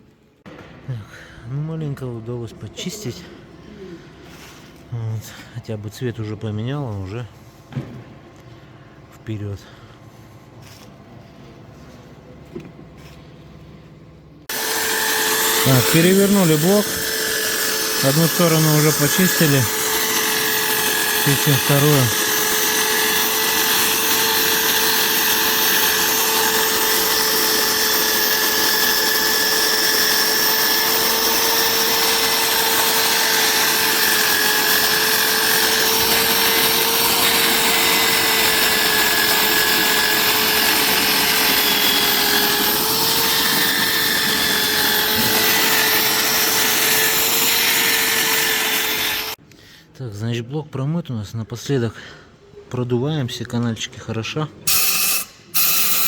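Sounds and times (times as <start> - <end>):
power tool whining: 14.4 - 49.4, 54.7 - 56.0.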